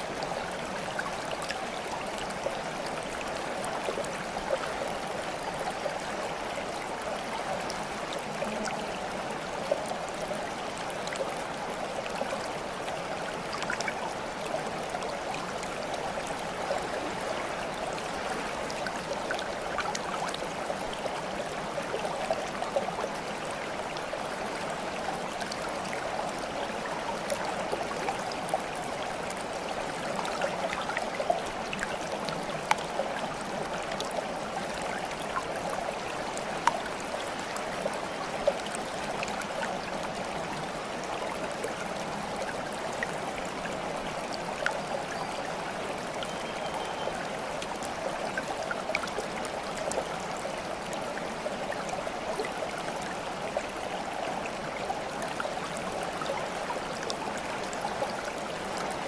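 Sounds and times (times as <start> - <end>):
stream flowing and gurgling: 0.0 - 59.0
water drips and splashes: 0.0 - 59.0.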